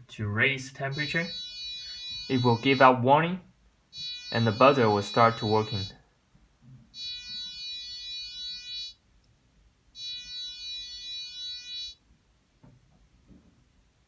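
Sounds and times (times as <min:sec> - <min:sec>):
high-pitched electronic buzzer beeps: 0:00.9 - 0:02.9, 0:03.9 - 0:06.0, 0:07.0 - 0:09.0, 0:10.0 - 0:12.0.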